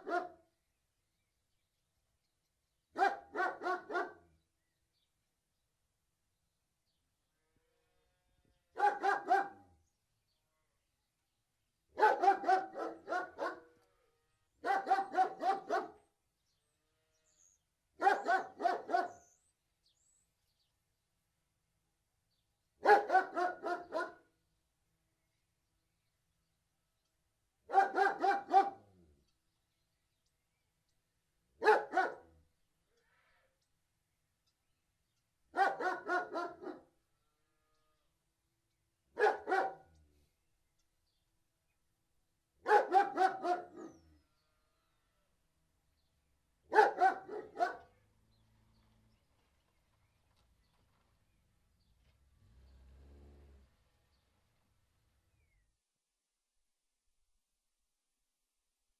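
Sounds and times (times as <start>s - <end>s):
large dog barking: 0.0s - 0.5s, 3.0s - 4.3s, 8.7s - 9.7s, 12.0s - 13.7s, 14.6s - 16.1s, 18.0s - 19.3s, 22.8s - 24.3s, 27.7s - 29.1s, 31.6s - 32.4s, 35.5s - 37.0s, 39.1s - 40.0s, 42.6s - 44.2s, 46.7s - 48.1s.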